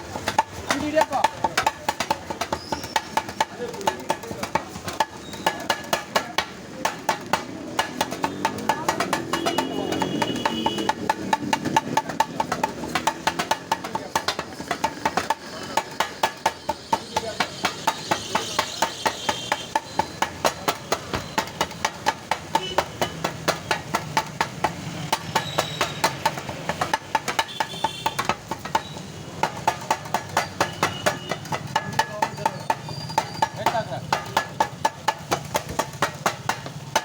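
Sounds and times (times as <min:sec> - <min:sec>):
metal tools clanging on griddle: 0:24.8 - 0:37.0.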